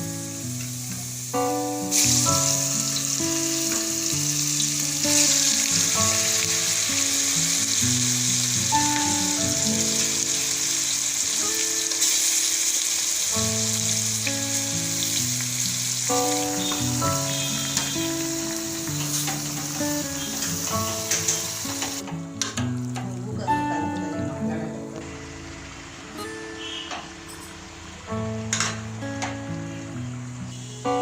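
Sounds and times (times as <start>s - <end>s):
background music: 0.0s - 31.0s
chicken frying in hot oil: 0.2s - 22.0s.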